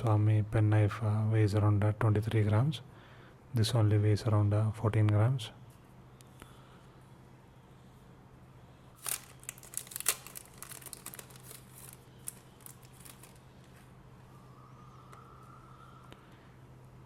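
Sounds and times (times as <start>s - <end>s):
low electrical hum: 0.0s - 17.0s
plastic clicks and crinkly scrapes: 9.0s - 13.4s.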